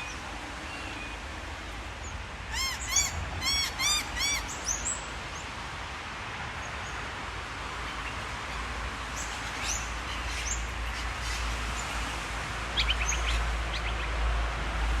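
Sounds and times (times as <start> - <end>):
birds chirping: 0.0 - 5.5, 7.9 - 12.0.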